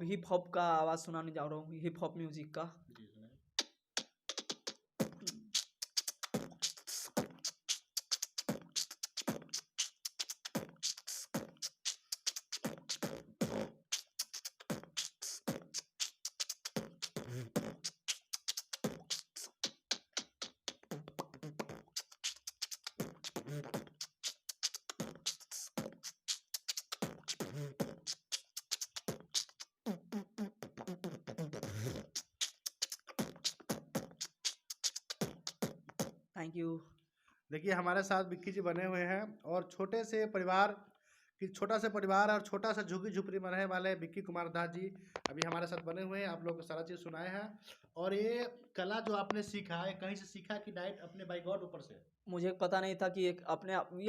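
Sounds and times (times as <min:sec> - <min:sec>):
man beatboxing: 0:03.6 - 0:36.1.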